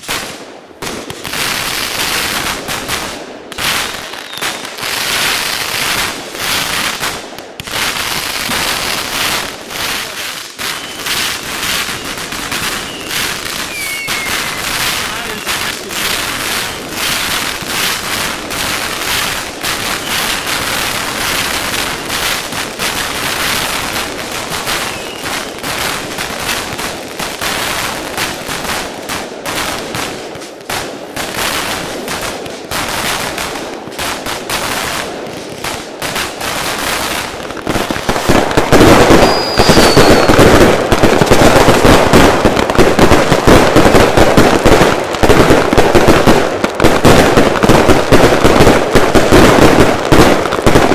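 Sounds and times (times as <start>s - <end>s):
fireworks bangs and crackles: 0.0s - 50.9s.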